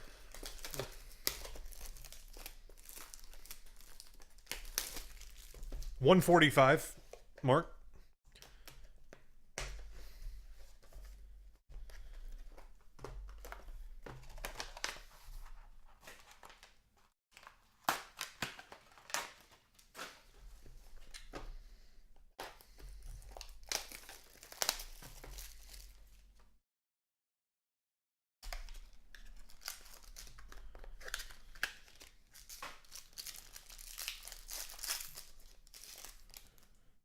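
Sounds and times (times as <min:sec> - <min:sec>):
plastic wrapping crinkling: 0:00.1 - 0:06.0, 0:23.0 - 0:26.2, 0:28.6 - 0:36.7.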